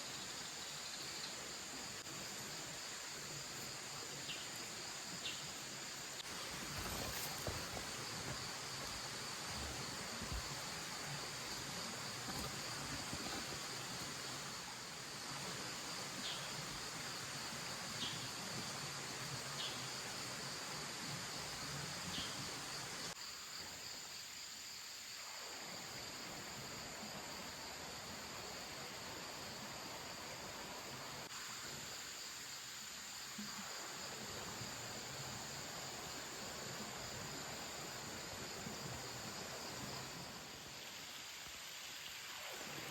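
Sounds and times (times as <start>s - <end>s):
crickets trilling: 0.0s - 42.9s
stream rushing: 5.9s - 22.0s.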